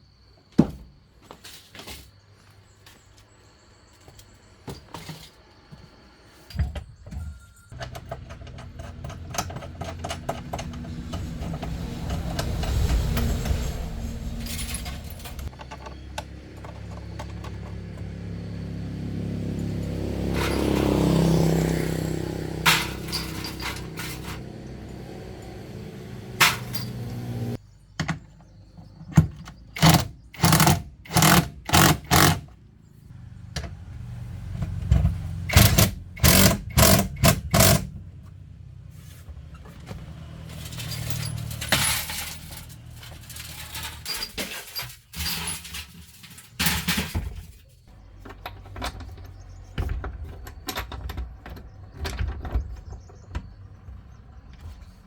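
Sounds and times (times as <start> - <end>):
car engine running: 8.0 - 27.6, 29.8 - 43.6
low hum: 10.0 - 17.4
harsh mechanical strokes: 10.4 - 15.5, 29.8 - 32.5, 35.4 - 37.9.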